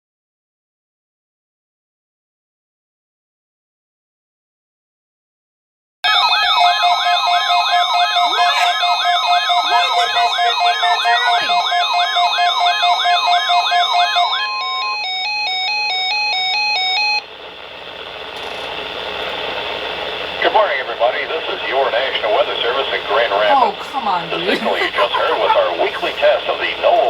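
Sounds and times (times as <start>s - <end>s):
steady warning alarm tone: 6.0s - 27.0s
warbling alarm sirens: 6.0s - 27.0s
pulsed beeps: 6.6s - 17.2s
radio hiss: 8.1s - 14.6s, 17.3s - 27.0s.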